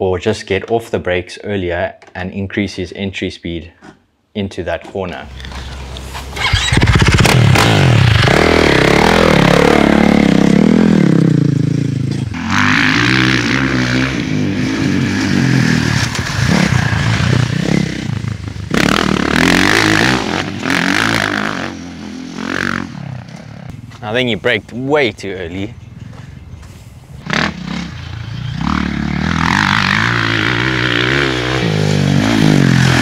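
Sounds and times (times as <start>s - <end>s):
dirt bike engine revving: 5.3s - 23.7s, 27.2s - 33.0s.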